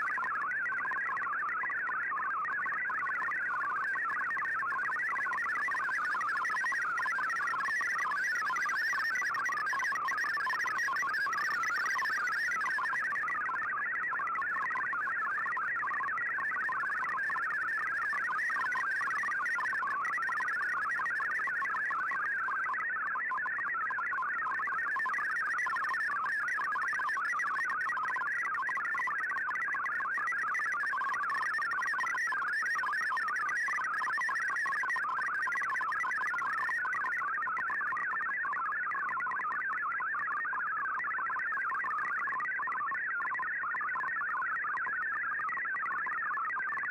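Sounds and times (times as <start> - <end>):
warbling digital radio signal: 2.8 - 13.6.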